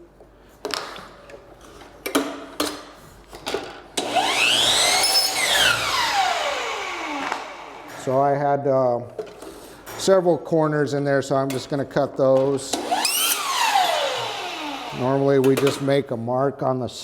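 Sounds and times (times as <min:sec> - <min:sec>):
miter saw motor whining: 0:04.0 - 0:08.0, 0:12.8 - 0:15.1
saw cutting wood: 0:04.0 - 0:08.0, 0:12.8 - 0:15.2.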